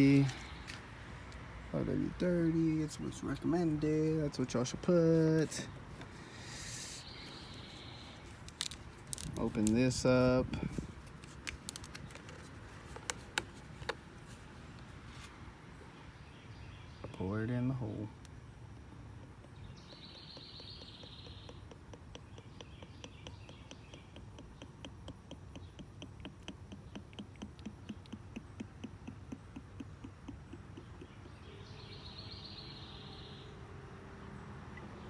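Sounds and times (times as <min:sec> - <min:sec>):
short high hisses: 0:06.2 - 0:07.5.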